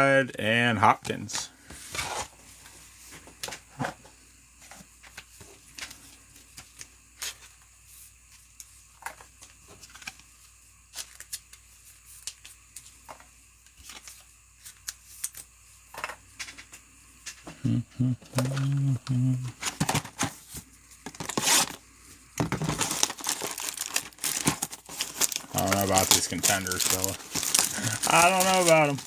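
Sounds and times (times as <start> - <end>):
cards and foil wrappers rustling: 8.4 - 16.7, 19.5 - 21.8, 22.4 - 29.0.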